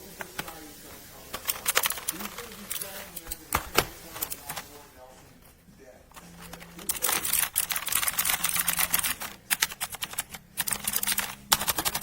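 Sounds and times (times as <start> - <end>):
mechanical keyboard typing: 1.2 - 4.8, 6.2 - 12.0.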